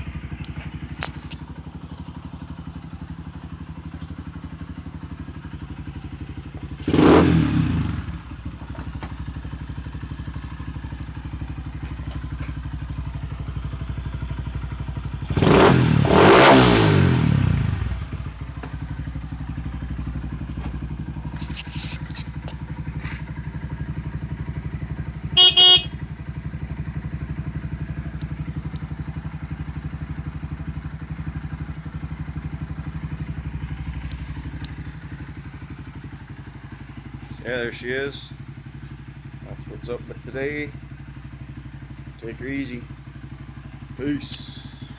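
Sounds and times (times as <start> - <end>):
motorcycle engine idling and revving: 0.0 - 44.9
horn beeps: 25.3 - 26.0.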